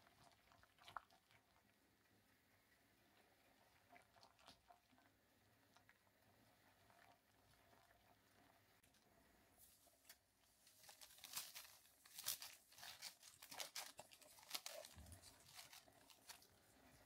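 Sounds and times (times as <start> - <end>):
packaging crinkling and tearing: 10.6 - 16.6.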